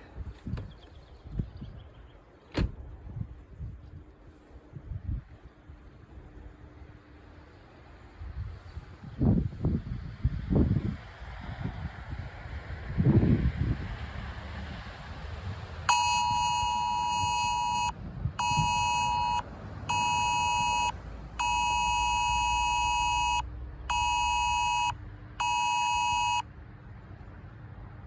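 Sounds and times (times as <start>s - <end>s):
emergency alert tone blasts: 15.9s - 26.4s.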